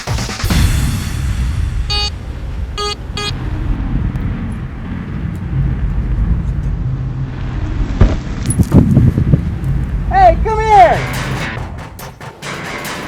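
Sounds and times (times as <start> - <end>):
vehicle engine rumbling: 0.4 - 12.9
short high-pitched beeps: 1.9 - 2.1, 2.8 - 3.4.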